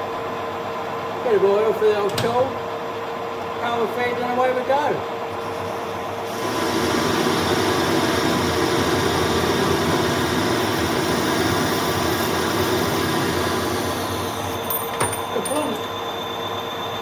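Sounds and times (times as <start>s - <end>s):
metal lathe cutting: 5.3s - 17.0s.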